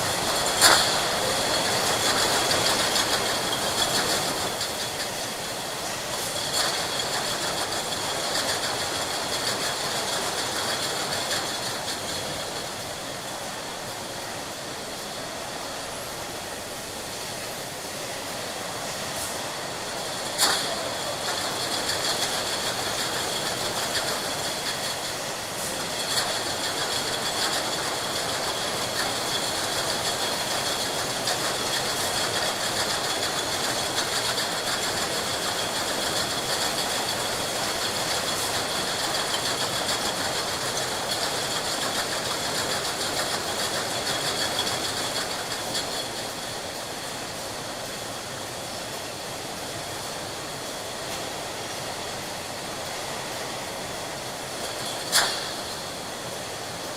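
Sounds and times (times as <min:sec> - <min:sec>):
machinery noise: 0:00.0 - 0:56.9.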